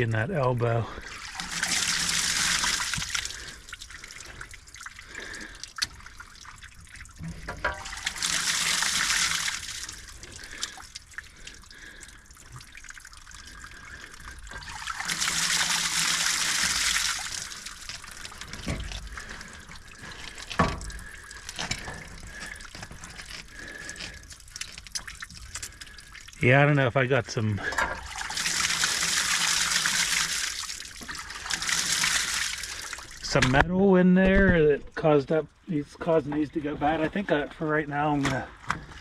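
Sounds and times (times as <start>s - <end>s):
water draining through pipes: 0.0s - 33.7s, 35.0s - 39.0s.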